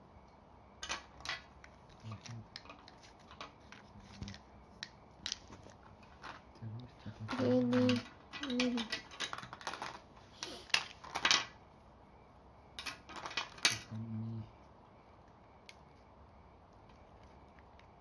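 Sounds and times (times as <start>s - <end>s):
plastic toy pieces clicking: 7.3s - 11.5s.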